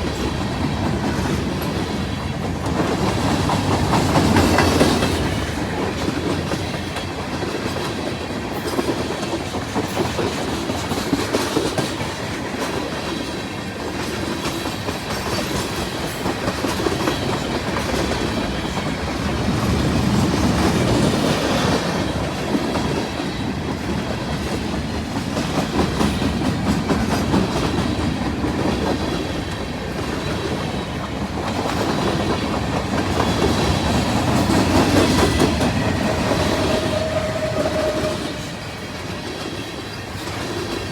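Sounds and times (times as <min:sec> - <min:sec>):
freight train wheels clacking: 0:00.0 - 0:40.9.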